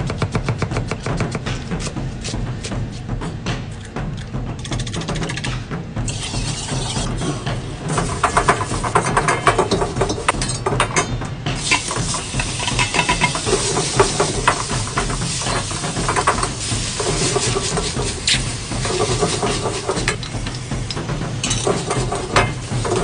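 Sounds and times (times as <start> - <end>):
food sizzling in a wok: 6.1 - 9.9, 11.6 - 23.0
metal ladle scraping wok: 6.1 - 10.2, 11.6 - 20.6, 21.4 - 23.0.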